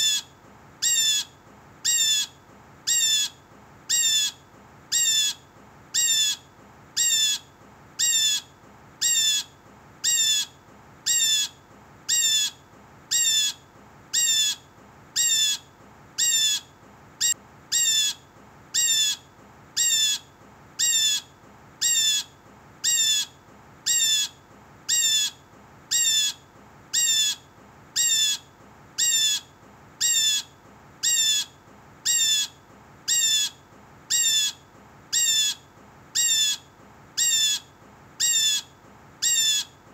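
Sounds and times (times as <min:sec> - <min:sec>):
blue jay calling: 0:00.0 - 0:06.4, 0:07.0 - 0:14.6, 0:15.2 - 0:19.2, 0:19.8 - 0:39.8.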